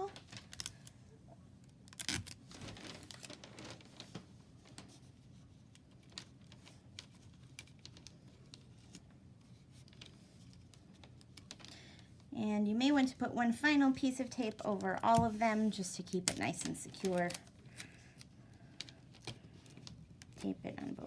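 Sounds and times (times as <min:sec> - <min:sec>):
tape crinkling: 0:01.7 - 0:04.9, 0:14.3 - 0:21.0
tape tearing: 0:01.9 - 0:03.9.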